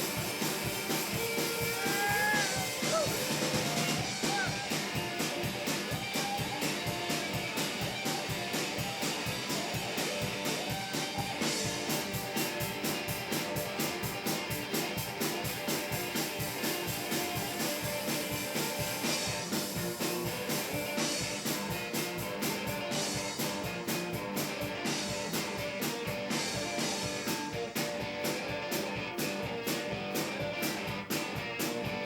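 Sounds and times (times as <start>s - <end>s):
guitar riffing: 0.0s - 11.9s
driving drum beat: 0.0s - 32.0s.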